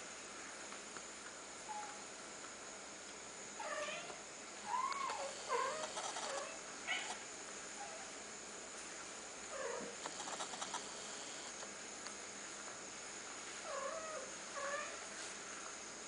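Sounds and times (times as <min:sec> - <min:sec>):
kittens mewing: 0:04.7 - 0:07.2, 0:09.6 - 0:11.5.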